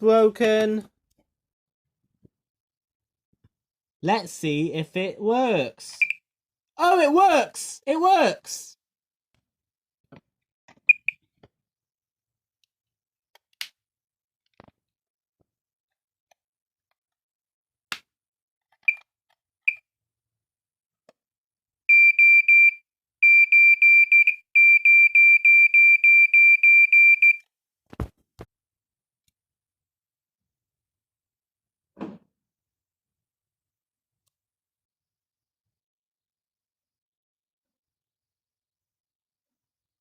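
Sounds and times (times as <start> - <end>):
smoke alarm chirps: 21.9 - 27.4
smoke alarm pulsing beep: 21.9 - 27.4
thump: 32.0 - 32.3.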